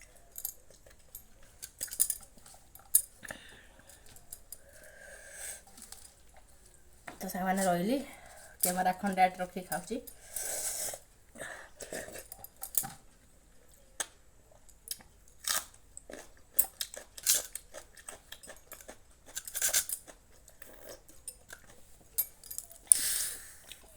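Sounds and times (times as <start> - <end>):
person chewing and crunching: 14.5 - 23.9.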